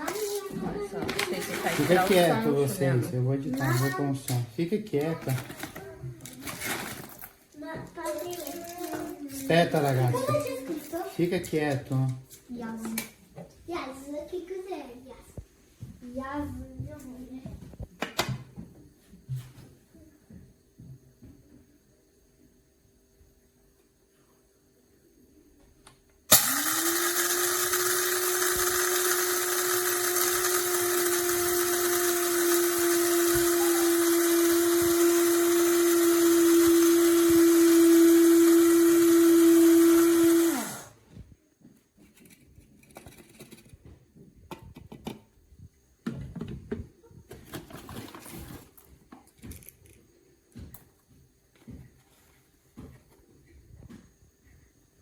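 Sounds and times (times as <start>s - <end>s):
coffee grinder motor whine: 1.1s - 2.9s, 26.3s - 41.0s
knocks and handling sounds: 5.0s - 10.1s, 41.1s - 45.4s, 46.0s - 51.0s.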